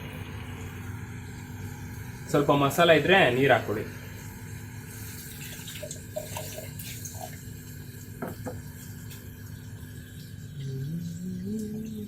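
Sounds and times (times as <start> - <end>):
water poured into a pan: 3.1 - 12.0.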